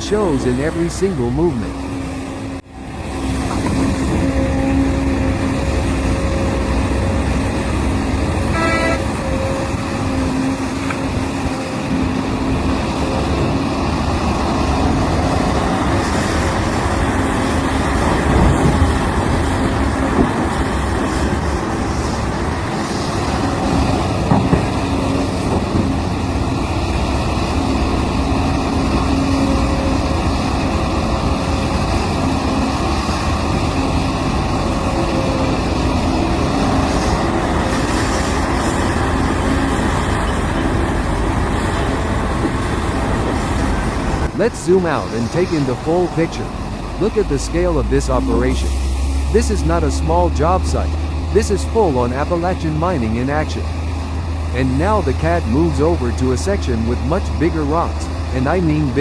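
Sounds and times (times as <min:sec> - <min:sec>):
heavy diesel machinery running: 0:00.0 - 0:59.0
short horn toot: 0:08.5 - 0:09.2.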